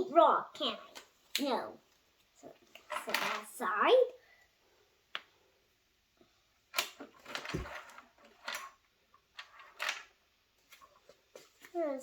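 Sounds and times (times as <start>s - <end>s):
soft thud: 7.5s - 7.8s.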